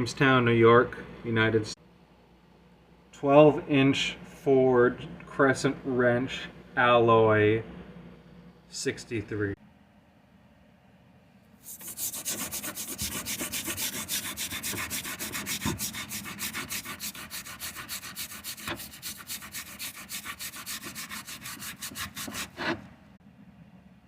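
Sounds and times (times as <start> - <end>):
abrasive rubbing on rusty steel: 11.6 - 22.9.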